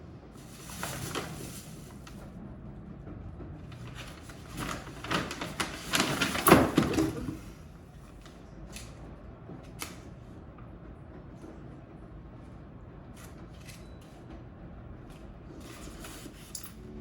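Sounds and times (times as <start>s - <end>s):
crackly rustling: 0.3s - 2.4s, 3.6s - 9.8s.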